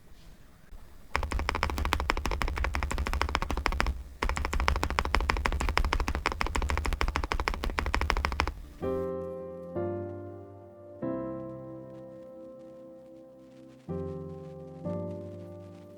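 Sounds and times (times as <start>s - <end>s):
fast typing on mechanical keyboard: 1.1s - 9.0s.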